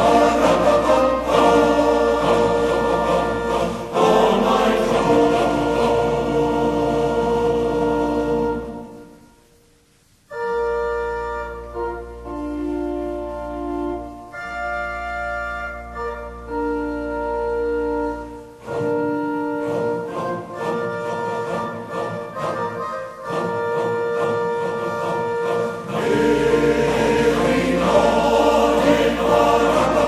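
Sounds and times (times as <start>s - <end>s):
organ playing slow chords: 10.3s - 21.3s.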